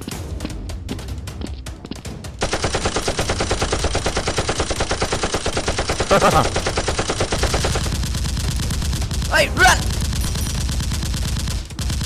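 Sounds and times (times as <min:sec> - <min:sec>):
rapid automatic gunfire: 0:02.4 - 0:12.0
short shout: 0:09.3 - 0:09.9.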